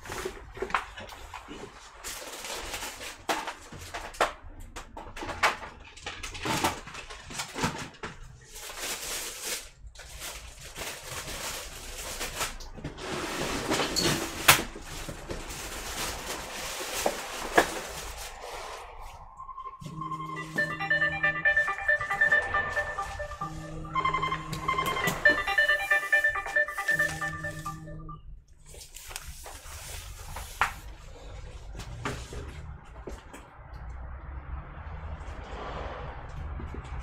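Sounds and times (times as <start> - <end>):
rummaging through parts by hand: 0.0 - 18.5.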